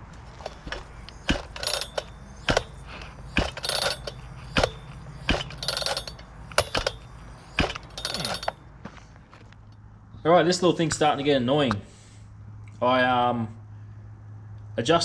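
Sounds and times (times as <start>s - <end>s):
chainsaw recoil starter pulls: 0.3s - 8.6s.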